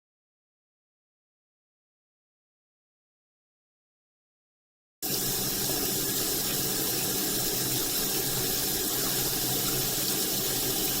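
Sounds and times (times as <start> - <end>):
water running into a sink: 5.0 - 11.0.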